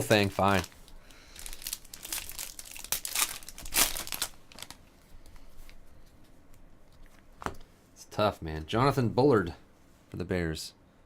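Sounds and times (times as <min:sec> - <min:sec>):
wrapper crinkling and tearing: 0:00.0 - 0:04.8.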